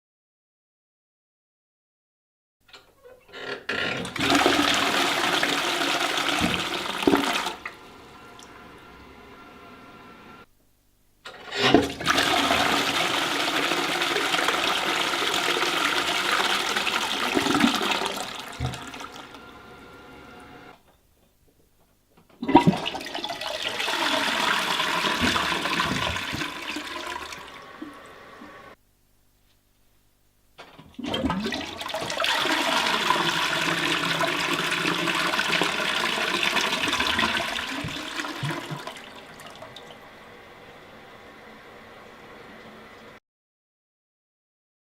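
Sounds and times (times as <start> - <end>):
toilet flushing: 3.4 - 10.4, 11.3 - 20.8, 22.4 - 28.8, 30.8 - 43.2.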